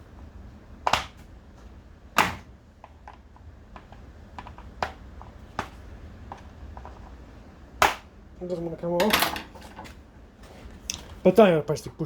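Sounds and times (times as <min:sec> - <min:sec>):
tools knocking and clicking on parts: 0:09.0 - 0:10.0.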